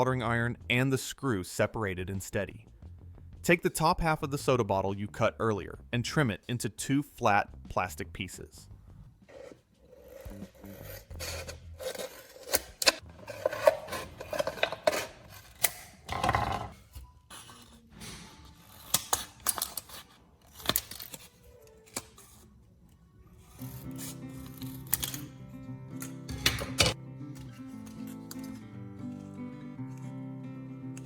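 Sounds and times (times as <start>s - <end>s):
plastic bottle being cut: 10.0s - 17.9s.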